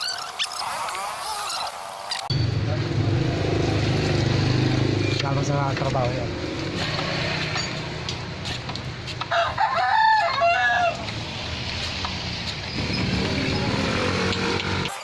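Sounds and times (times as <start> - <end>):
rooster crowing: 9.3 - 11.1.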